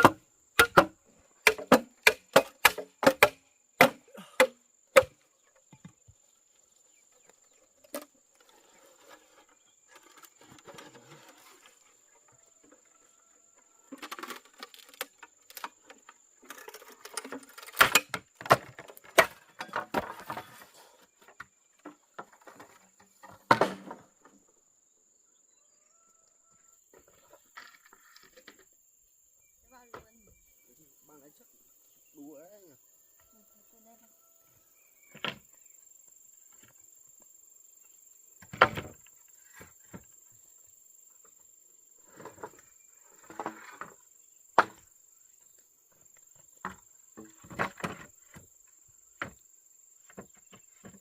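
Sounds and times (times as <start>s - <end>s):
rustling and knocking of wood: 0.0s - 24.5s, 35.0s - 35.6s, 38.4s - 40.4s, 42.1s - 51.0s.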